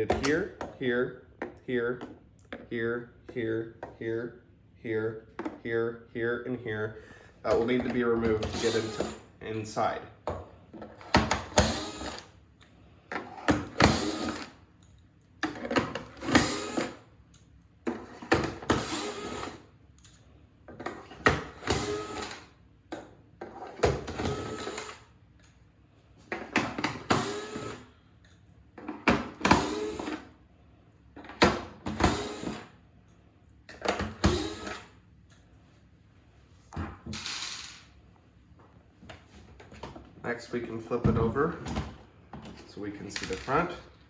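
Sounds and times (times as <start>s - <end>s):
powered screwdriver running: 8.4s - 9.2s, 11.5s - 12.3s, 13.7s - 14.5s, 16.2s - 17.0s, 18.7s - 19.6s, 21.5s - 22.4s, 24.1s - 25.0s, 27.0s - 27.9s, 29.4s - 30.2s, 32.0s - 32.6s, 34.2s - 34.9s.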